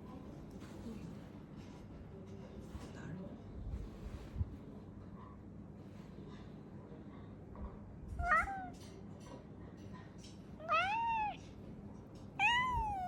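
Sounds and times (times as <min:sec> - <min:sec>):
cat meowing: 0:08.2 - 0:08.8, 0:10.6 - 0:11.4, 0:12.4 - 0:13.0.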